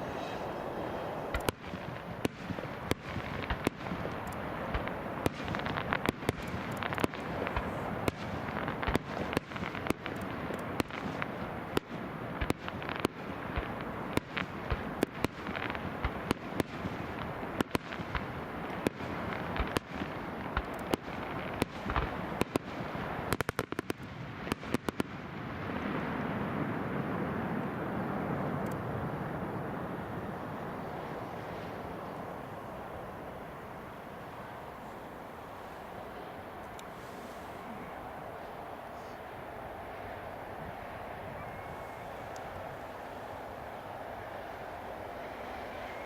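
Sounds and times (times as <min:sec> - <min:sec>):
firework crackle: 0:00.0 - 0:46.0.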